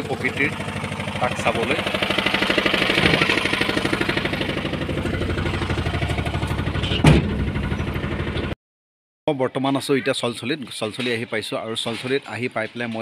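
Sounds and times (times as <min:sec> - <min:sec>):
vehicle engine running: 0:00.0 - 0:08.6.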